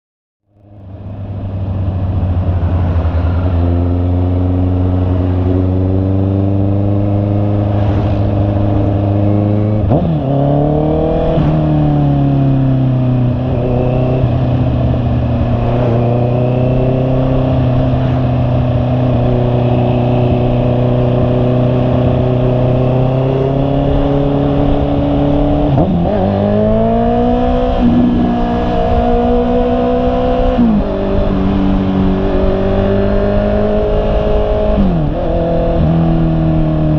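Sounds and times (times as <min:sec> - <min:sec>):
motorcycle engine running: 0:00.5 - 0:36.9.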